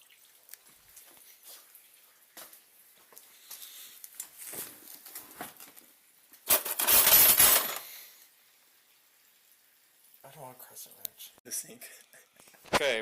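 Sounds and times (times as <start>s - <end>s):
tools clattering together: 6.4s - 7.9s
metal hand tools clinking: 6.5s - 7.8s.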